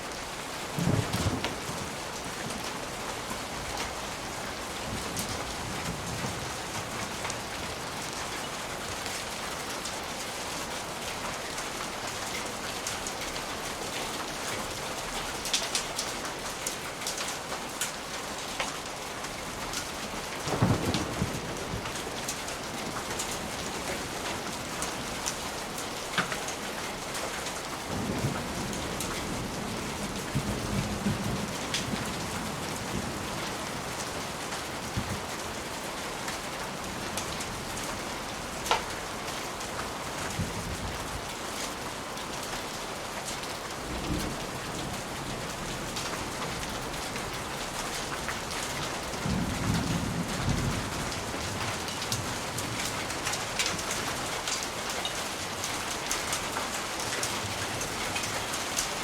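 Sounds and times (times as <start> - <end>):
rain pattering: 0.0 - 59.0
distant thunder rolling: 20.5 - 22.2.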